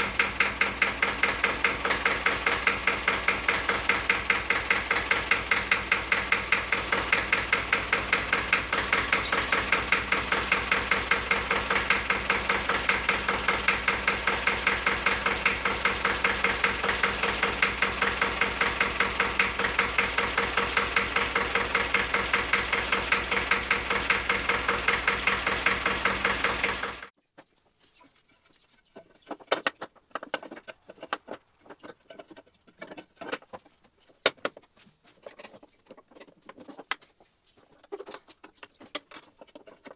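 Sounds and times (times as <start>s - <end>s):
diesel engine running: 0.0s - 27.1s.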